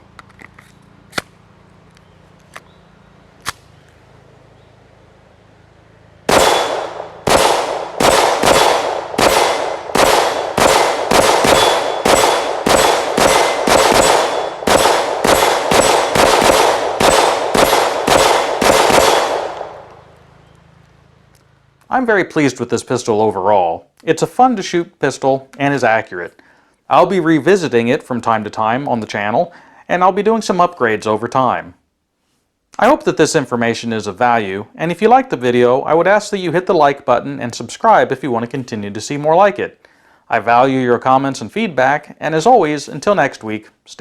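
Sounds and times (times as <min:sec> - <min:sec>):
pistol shots: 0:06.3 - 0:20.1
steel targets clanging: 0:08.6 - 0:18.5.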